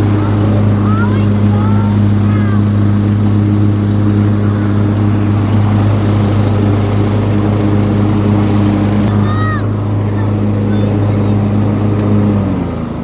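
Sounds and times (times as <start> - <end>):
riding lawn mower engine droning: 0.0 - 13.0.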